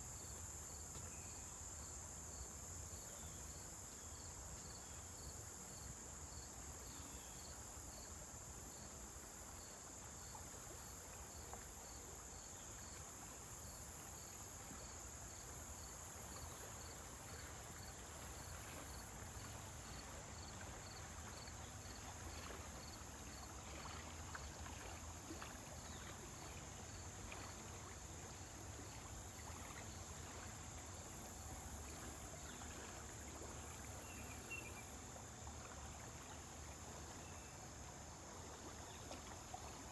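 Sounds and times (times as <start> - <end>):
cricket chirping: 0.0 - 38.0.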